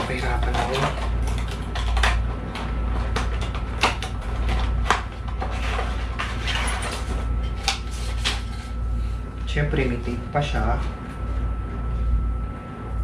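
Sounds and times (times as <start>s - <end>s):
packaging clicks and knocks: 0.0s - 8.5s
packaging rustling: 0.0s - 8.8s
steady low hum: 0.0s - 13.0s.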